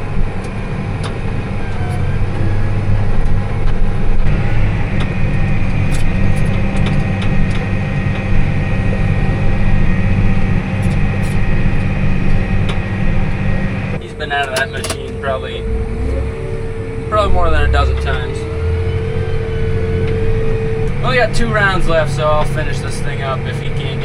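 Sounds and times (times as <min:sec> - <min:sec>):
tractor engine running: 0:00.0 - 0:24.0
thin high whine: 0:14.0 - 0:23.1.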